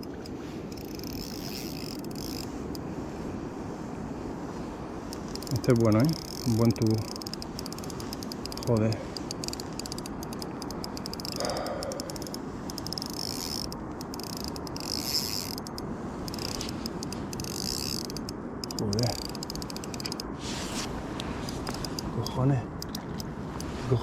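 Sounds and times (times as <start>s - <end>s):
fishing reel clicking and whirring: 0.0s - 2.8s, 5.1s - 20.3s.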